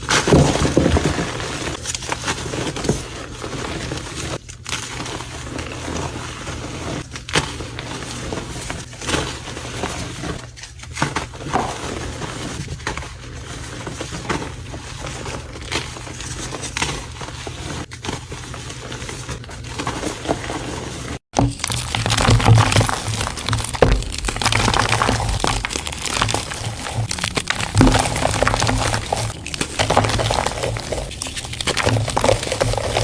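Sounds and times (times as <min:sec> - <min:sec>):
dry granular material crunching: 0:19.8 - 0:33.0.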